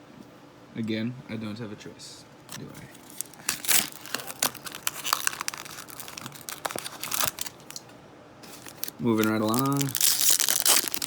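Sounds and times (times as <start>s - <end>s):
foil wrapper crinkling and tearing: 2.9s - 7.8s, 8.4s - 11.0s.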